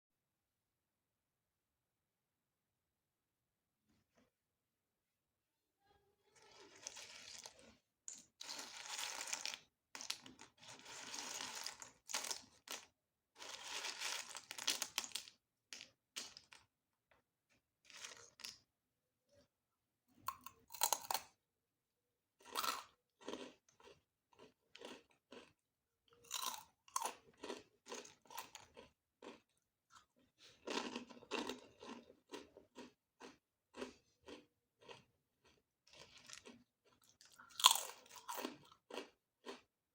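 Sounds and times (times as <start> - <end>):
chewing crunchy food: 20.3 - 21.4, 22.4 - 39.7.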